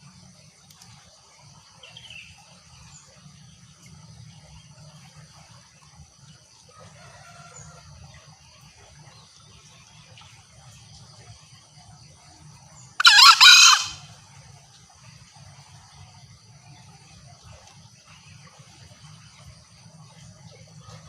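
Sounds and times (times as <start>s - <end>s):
junglefowl call: 13.0s - 14.2s.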